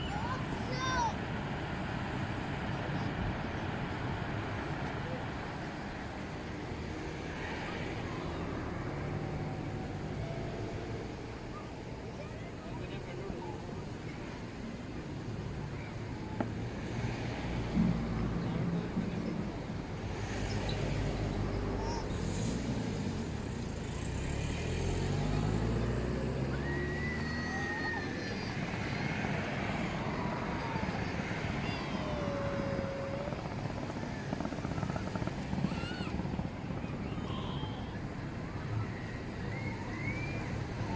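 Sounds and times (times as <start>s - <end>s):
fireworks rumble and crackle: 9.5s - 25.0s, 27.3s - 40.9s
faint firework whistles: 26.5s - 29.1s, 35.6s - 36.2s, 36.9s - 40.9s.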